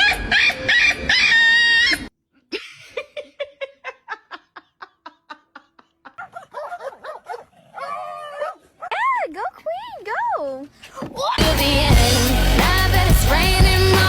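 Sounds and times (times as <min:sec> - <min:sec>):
person laughing: 0:02.5 - 0:08.0.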